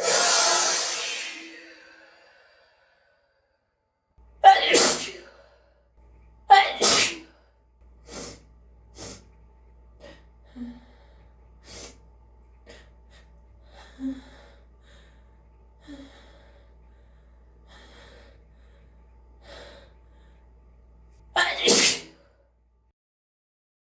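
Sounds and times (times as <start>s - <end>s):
person sneezing: 4.5s - 5.3s, 6.5s - 7.3s, 21.4s - 22.2s.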